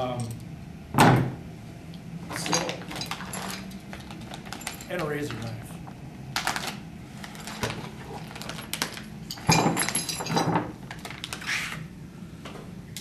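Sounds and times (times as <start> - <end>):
metal bolts clinking and rattling: 2.3 - 5.6, 6.4 - 10.7.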